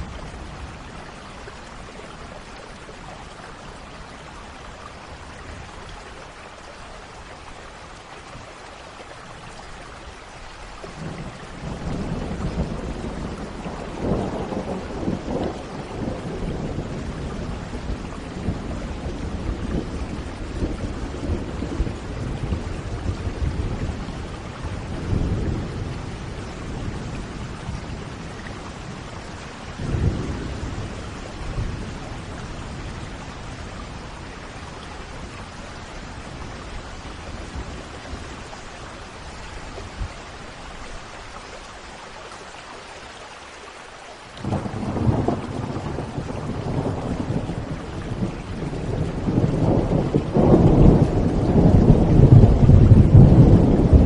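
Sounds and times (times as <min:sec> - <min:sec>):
steady rain: 0:00.0 - 0:54.0
rolling thunder: 0:10.9 - 0:38.7, 0:44.4 - 0:54.0.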